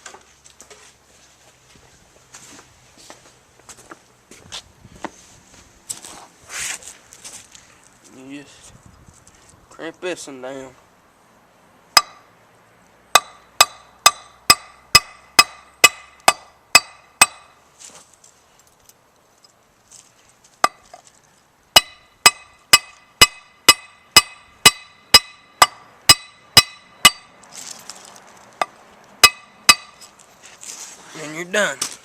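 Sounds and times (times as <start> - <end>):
hammer blows on metal: 13.2 - 17.6, 21.8 - 27.4, 29.2 - 30.1.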